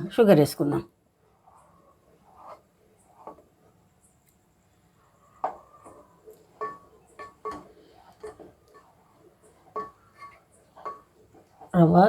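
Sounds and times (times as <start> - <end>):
ladle clinking against pot: 5.4 - 11.2.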